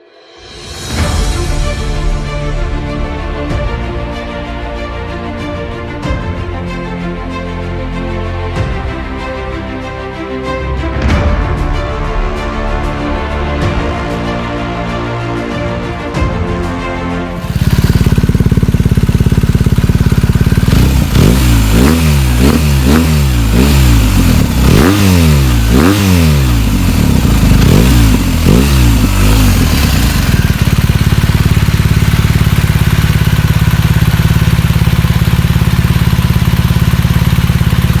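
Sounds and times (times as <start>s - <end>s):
motorcycle engine idling and revving: 17.4s - 38.0s.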